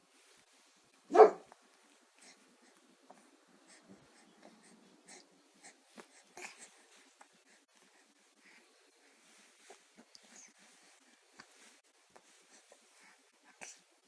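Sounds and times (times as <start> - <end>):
baby breathing and snuffling: 2.2 - 13.9.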